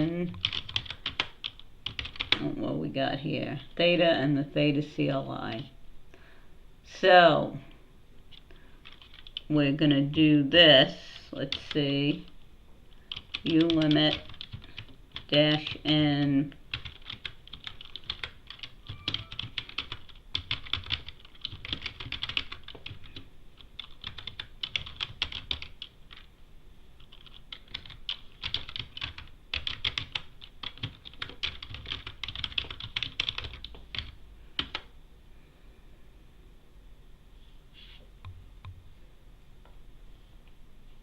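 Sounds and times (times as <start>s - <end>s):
computer keyboard typing: 0.3s - 2.4s, 8.8s - 9.5s, 13.1s - 15.8s, 16.7s - 26.3s, 27.0s - 34.9s.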